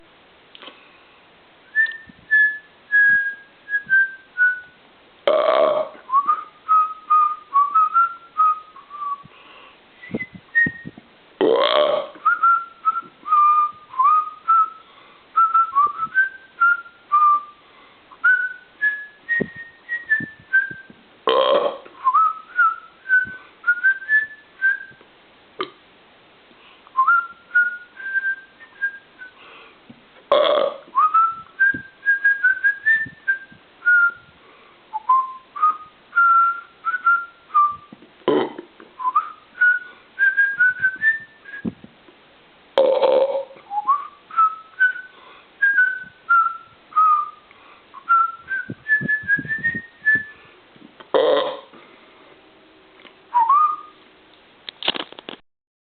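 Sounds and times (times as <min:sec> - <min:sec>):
person whistling a melody: 0:01.7 - 0:04.8, 0:06.0 - 0:09.4, 0:10.0 - 0:11.0, 0:12.2 - 0:14.8, 0:15.4 - 0:21.0, 0:22.0 - 0:25.0, 0:27.0 - 0:29.4, 0:30.9 - 0:34.3, 0:34.9 - 0:38.0, 0:39.0 - 0:41.8, 0:43.6 - 0:50.5, 0:53.3 - 0:54.0
loud belch: 0:05.3 - 0:06.0, 0:11.4 - 0:12.2, 0:21.3 - 0:21.9, 0:30.3 - 0:30.9, 0:38.2 - 0:38.7, 0:42.8 - 0:43.6, 0:51.1 - 0:51.7.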